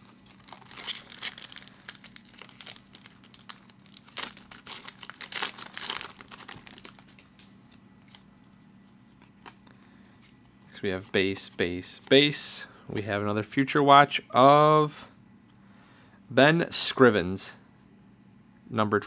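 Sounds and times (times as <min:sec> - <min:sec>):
wrapper crinkling: 0:00.2 - 0:08.3.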